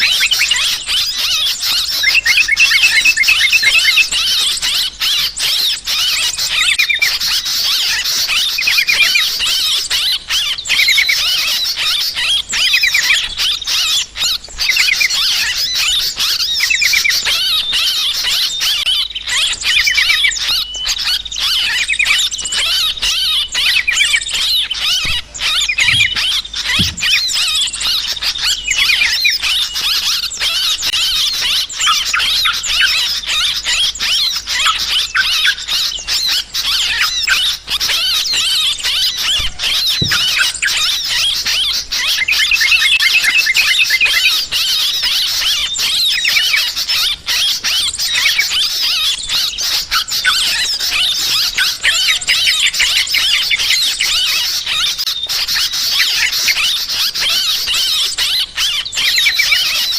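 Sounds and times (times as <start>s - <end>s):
flock of bulbuls chattering: 0.0s - 59.9s.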